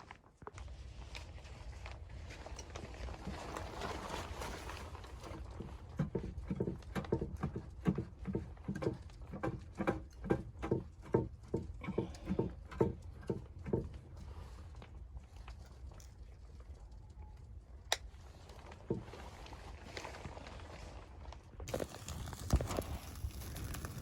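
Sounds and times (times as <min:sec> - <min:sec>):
footsteps crunching through snow: 0:19.3 - 0:24.0.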